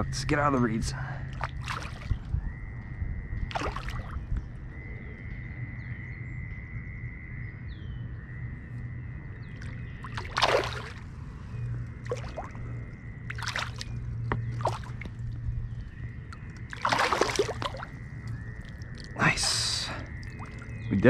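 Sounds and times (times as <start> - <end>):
water sloshing and splashing: 1.0 - 2.7, 3.4 - 4.6, 9.5 - 21.0
bird chirps: 7.4 - 21.0.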